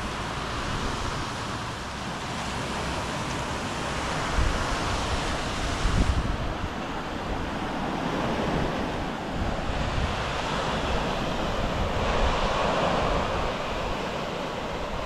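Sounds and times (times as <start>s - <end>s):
sea waves washing onto shore: 0.0s - 15.0s
wind buffeting microphone: 3.5s - 15.0s.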